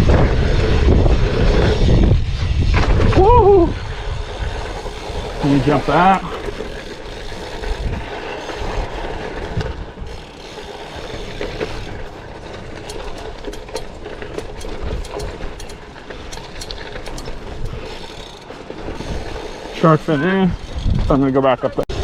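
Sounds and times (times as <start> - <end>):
wind on microphone: 0.0 - 10.2, 18.8 - 19.5, 20.5 - 21.2
bicycle tyres rolling on dirt: 0.0 - 22.0
bicycle hub ratchety ticking: 4.0 - 12.1, 12.7 - 21.9.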